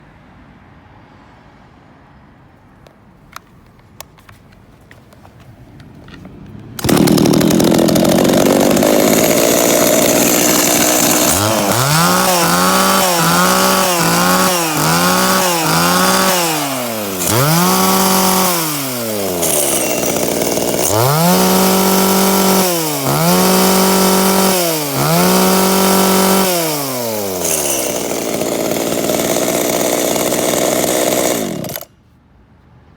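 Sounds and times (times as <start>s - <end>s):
chainsaw engine revving: 6.8s - 31.9s.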